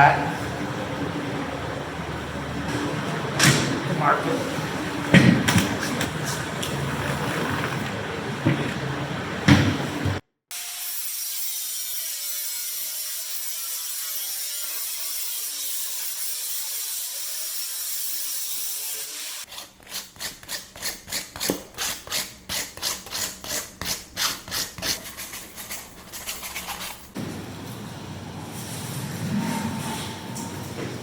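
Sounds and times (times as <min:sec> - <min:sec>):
rhythmic rasping cutting strokes: 0:10.8 - 0:27.2.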